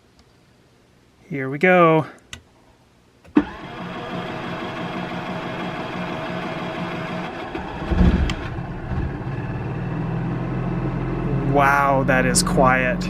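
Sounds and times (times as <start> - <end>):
generator humming: 3.3 - 13.0
low thump and click: 7.8 - 9.1.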